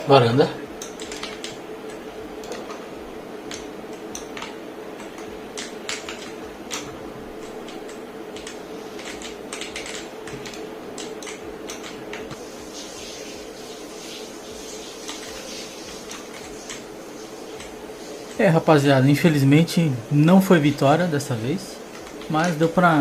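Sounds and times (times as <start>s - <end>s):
mechanical keyboard keys clacking: 0.8s - 2.7s, 3.5s - 12.4s.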